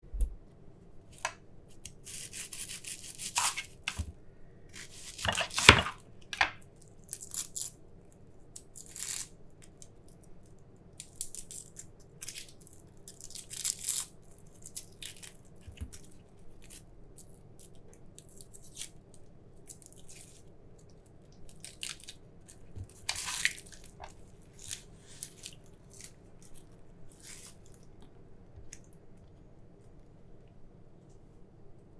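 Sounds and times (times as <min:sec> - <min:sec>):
onion skins crackling and tearing: 0:01.2 - 0:04.1, 0:04.7 - 0:10.4, 0:11.0 - 0:20.5, 0:21.2 - 0:28.1.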